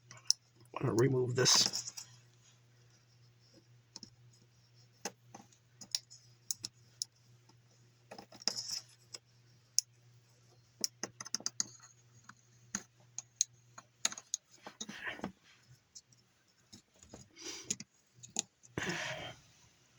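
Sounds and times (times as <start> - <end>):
small hard parts clicking: 5.0 - 9.2, 10.8 - 15.3, 15.9 - 19.2.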